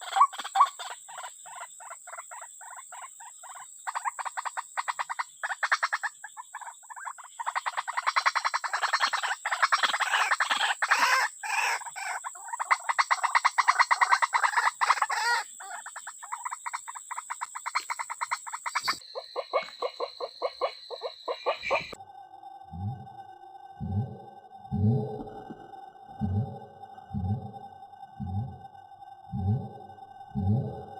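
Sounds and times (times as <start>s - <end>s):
pulsed trilling animal calls: 0.0s - 22.0s, 22.6s - 30.9s
steady high-pitched whine: 21.8s - 30.9s.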